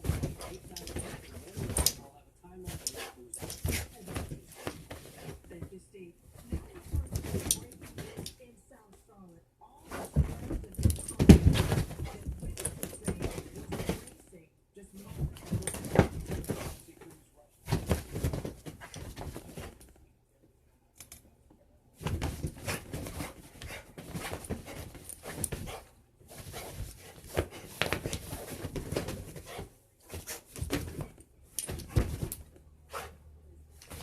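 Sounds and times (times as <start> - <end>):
dog scrambling: 0.0 - 2.0, 2.6 - 5.6, 6.4 - 8.4, 9.9 - 14.2, 15.1 - 16.9, 17.6 - 19.9, 22.0 - 33.2, 33.8 - 34.0.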